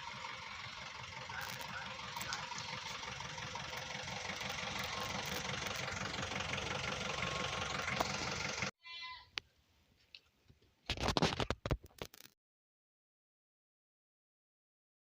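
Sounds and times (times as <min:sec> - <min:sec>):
diesel engine idling with clatter: 0:00.0 - 0:08.7.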